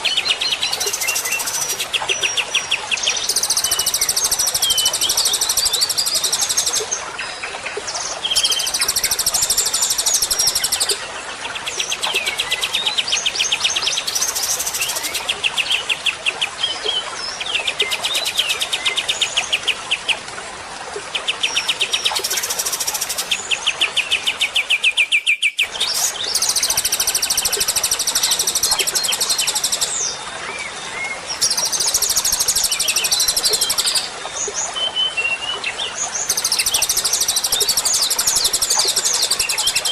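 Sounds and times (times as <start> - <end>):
recorded songbirds singing: 0.0 - 20.2, 21.1 - 39.9.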